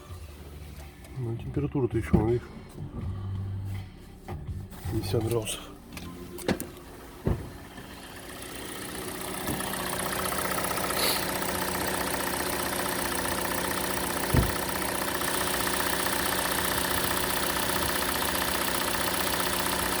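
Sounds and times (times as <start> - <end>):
car engine idling: 0.0 - 20.0
thump: 7.2 - 7.6, 14.3 - 14.6
fast even engine ticking: 7.7 - 20.0
short knocks: 14.3 - 14.6.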